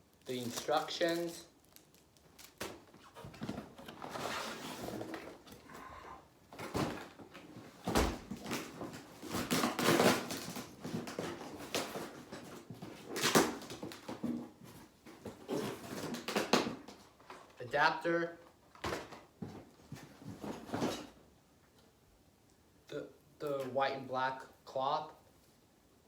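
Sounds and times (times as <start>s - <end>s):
packaging rustling: 0.0s - 5.7s, 6.5s - 17.5s.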